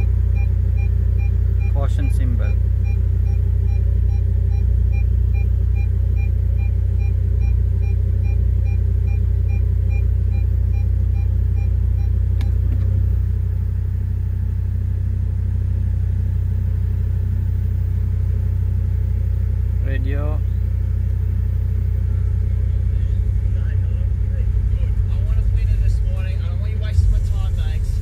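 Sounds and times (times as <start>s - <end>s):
rapid reversing beeps: 0.0s - 12.2s
car cabin engine hum: 0.0s - 28.0s.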